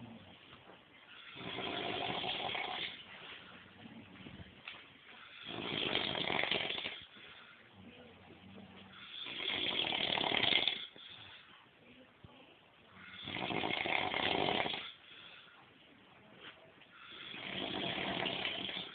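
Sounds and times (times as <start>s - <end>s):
quiet breathing: 0.0s - 18.9s
man snoring: 1.3s - 3.0s, 5.3s - 7.0s, 9.0s - 10.9s, 13.0s - 15.0s, 17.1s - 18.9s.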